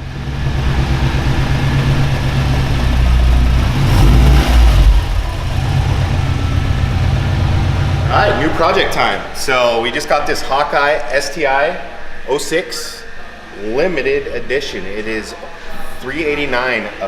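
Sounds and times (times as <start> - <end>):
car engine running: 0.0 - 9.0.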